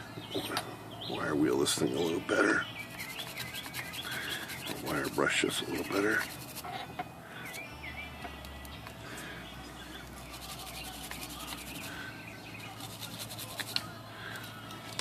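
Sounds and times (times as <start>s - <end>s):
wire brush scrubbing metal: 2.9s - 6.8s, 10.2s - 14.5s.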